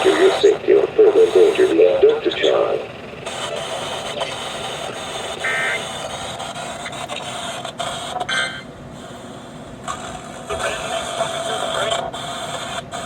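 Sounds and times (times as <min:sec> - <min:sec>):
warbling digital data tones: 0:00.0 - 0:05.8
radio static hiss: 0:00.0 - 0:13.0.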